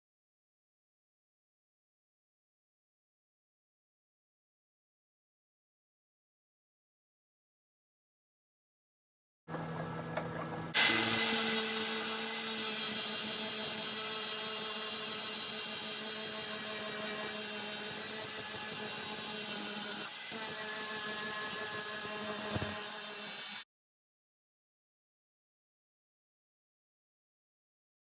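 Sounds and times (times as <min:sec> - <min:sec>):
power tool grinding hiss: 0:10.8 - 0:23.6.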